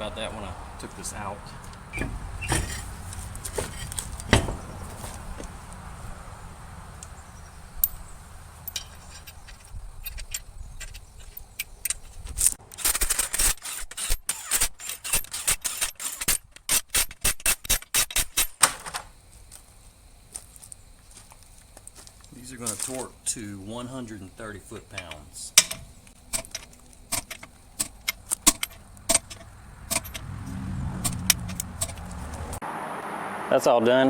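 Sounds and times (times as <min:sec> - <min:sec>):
scattered knocks: 0:01.5 - 0:05.6, 0:25.0 - 0:30.3
ratchet wrench clicking: 0:08.6 - 0:18.6, 0:24.9 - 0:30.3, 0:31.0 - 0:32.6.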